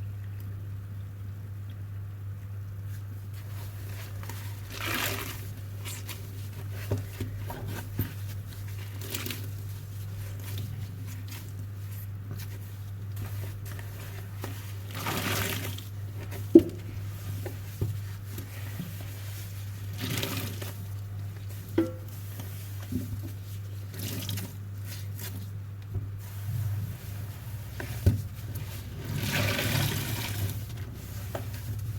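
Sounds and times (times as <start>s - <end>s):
water swooshing from sponge: 26.2s - 31.9s.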